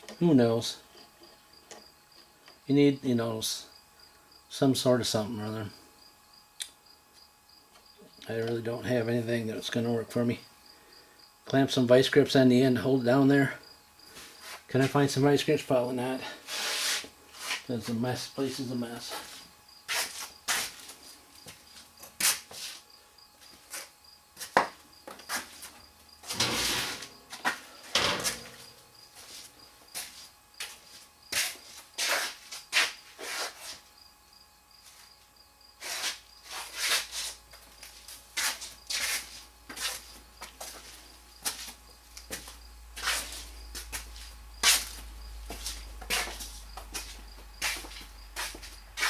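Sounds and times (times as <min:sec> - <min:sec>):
metal tools clinking and scraping: 0:26.2 - 0:28.8
drawers opening and closing: 0:26.3 - 0:28.7.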